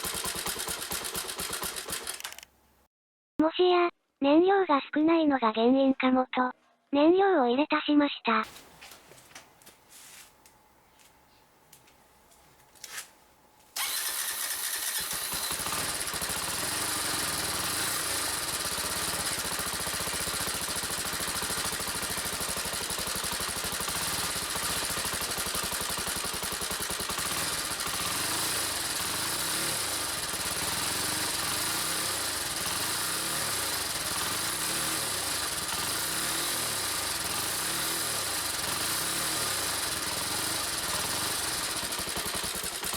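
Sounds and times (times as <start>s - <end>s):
motorcycle engine starting and running: 0.0s - 2.5s, 13.8s - 42.9s
short clicks: 2.1s - 2.5s.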